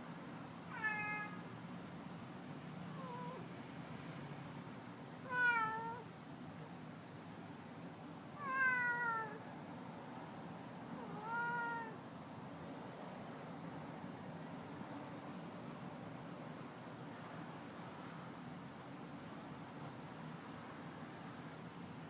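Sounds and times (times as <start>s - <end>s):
cat meowing: 0.7s - 1.4s, 2.9s - 3.4s, 5.2s - 6.1s, 8.4s - 9.4s, 11.0s - 12.0s.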